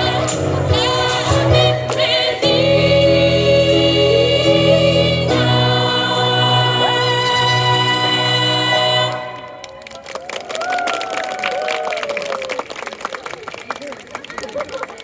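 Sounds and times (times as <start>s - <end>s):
gospel choir singing: 0.0s - 9.6s.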